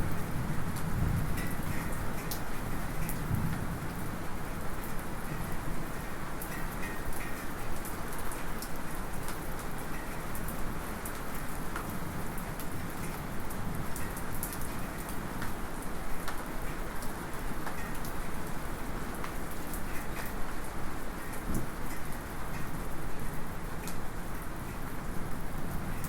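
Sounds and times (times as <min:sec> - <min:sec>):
light rain falling: 0:00.0 - 0:26.0.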